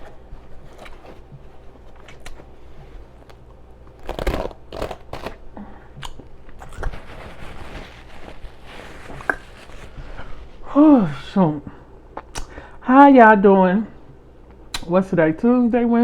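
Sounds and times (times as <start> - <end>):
person chewing with mouth smacking: 0.1 - 10.6, 12.1 - 12.6.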